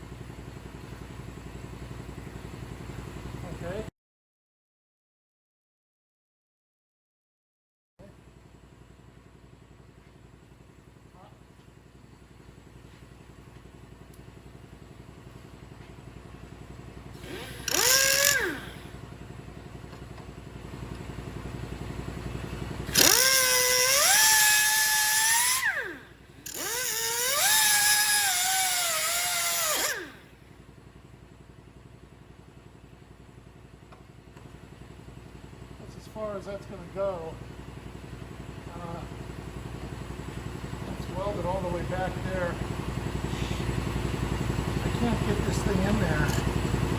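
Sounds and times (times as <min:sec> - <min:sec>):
power grinder on steel: 0:17.2 - 0:19.0, 0:22.9 - 0:30.3.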